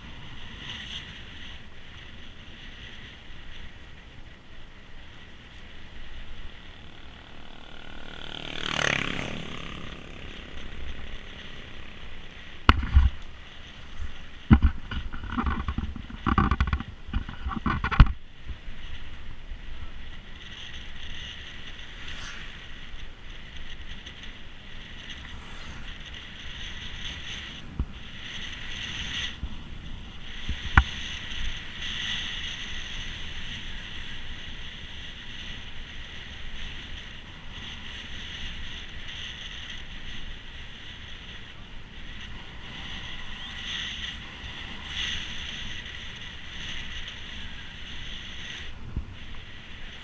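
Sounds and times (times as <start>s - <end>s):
steady high hiss: 0.0s - 15.3s, 18.1s - 50.0s
wind rumbling on microphone: 0.0s - 50.0s
bike bumping on trail: 10.6s - 18.6s.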